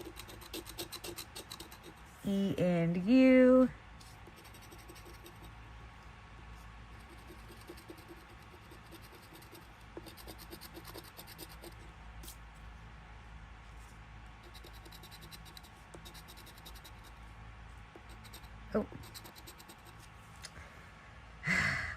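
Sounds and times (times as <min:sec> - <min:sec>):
scratching lottery ticket coating: 0:00.0 - 0:02.1, 0:04.0 - 0:05.6, 0:06.9 - 0:11.8, 0:14.4 - 0:17.1, 0:18.0 - 0:20.1.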